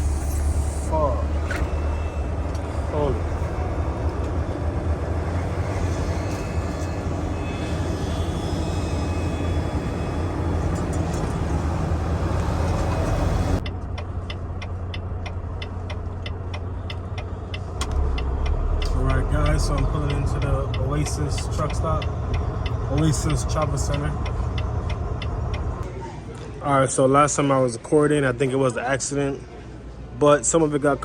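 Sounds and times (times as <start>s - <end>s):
truck engine and road drone: 0.0s - 25.9s
regular ticking: 1.6s - 25.9s.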